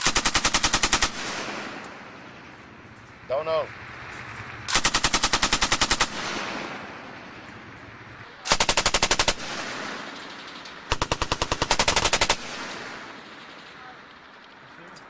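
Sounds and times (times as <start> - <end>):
machine gun bursts: 0.0 - 1.4, 4.7 - 6.5, 8.4 - 14.6
rolling echo: 0.0 - 15.0.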